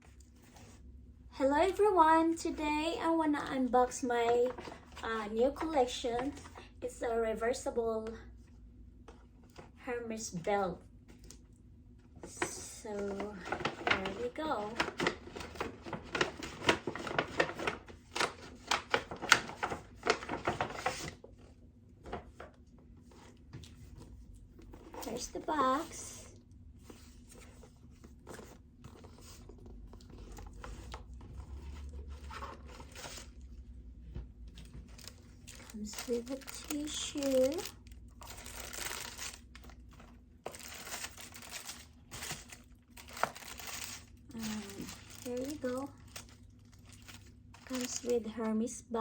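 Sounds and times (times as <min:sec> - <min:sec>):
packaging crinkling and clicking: 0:13.1 - 0:21.4, 0:34.5 - 0:48.1.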